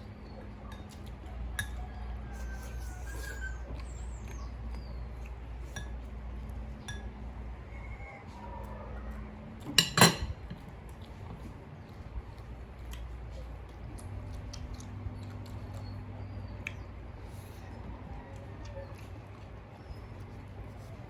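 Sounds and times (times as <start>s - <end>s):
dishes and utensils clinking: 0.7s - 1.8s, 6.8s - 7.2s, 9.6s - 10.6s.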